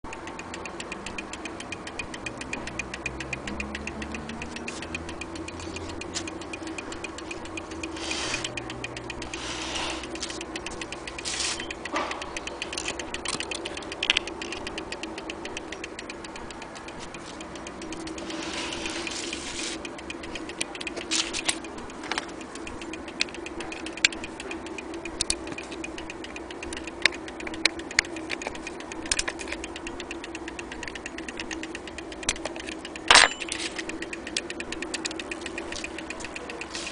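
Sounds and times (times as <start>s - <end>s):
mantel clock ticking: 0.0s - 36.9s
sharp clicks: 0.0s - 36.9s.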